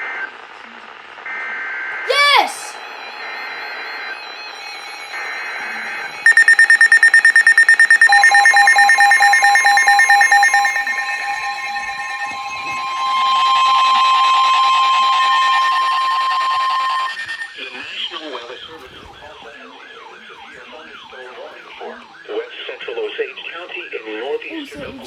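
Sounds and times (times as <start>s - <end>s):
steady piercing warning tone: 3.7s - 17.5s
rapid electronic alarm beeping: 5.6s - 17.5s
screechy data bursts: 6.3s - 17.4s.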